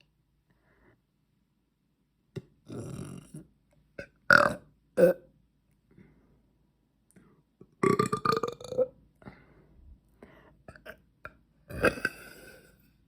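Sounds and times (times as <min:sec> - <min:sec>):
girl burping: 0:11.7 - 0:12.6.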